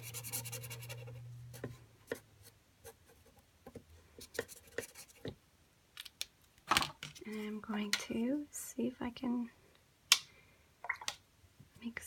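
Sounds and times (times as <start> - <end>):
pencil scratching on paper: 0.0 - 2.2, 2.8 - 5.3.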